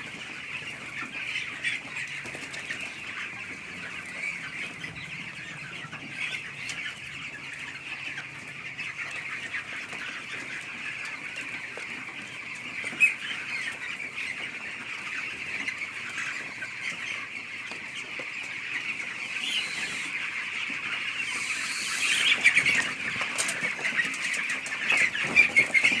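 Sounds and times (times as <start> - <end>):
chicks peeping: 0.0 - 26.0.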